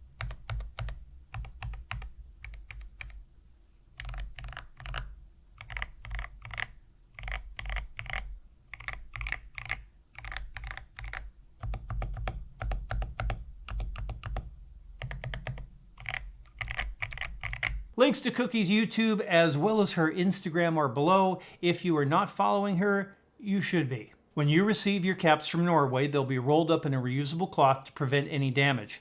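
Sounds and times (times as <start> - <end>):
mechanical keyboard typing: 0.2 - 3.2, 4.0 - 17.9.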